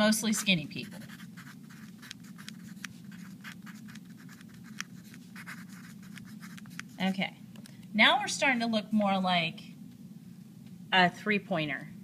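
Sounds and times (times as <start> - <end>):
pen scratching on paper: 0.0 - 7.2
steady low hum: 0.0 - 12.0.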